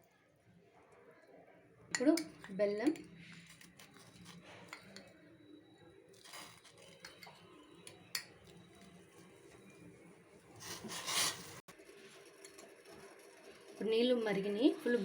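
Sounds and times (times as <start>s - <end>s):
cooking utensils handling: 10.6s - 11.6s.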